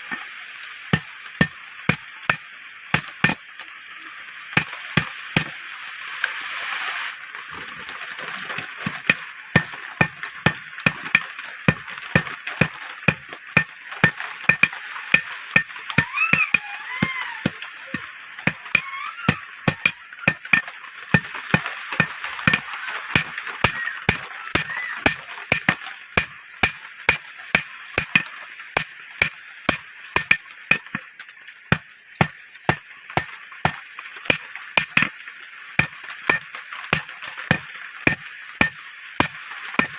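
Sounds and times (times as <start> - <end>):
hammer striking iron on anvil: 3.0 - 3.4, 9.1 - 16.1, 17.4 - 18.8, 19.7 - 22.6, 23.2 - 31.0, 31.7 - 35.1, 35.8 - 39.9.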